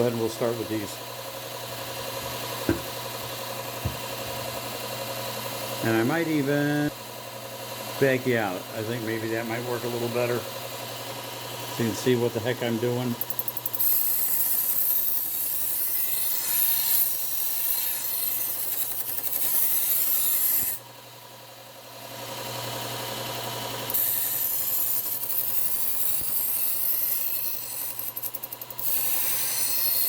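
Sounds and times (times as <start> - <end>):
knife grinding on belt sander: 0.0 - 6.9, 7.6 - 20.9, 22.4 - 30.0
motor humming: 1.3 - 14.4.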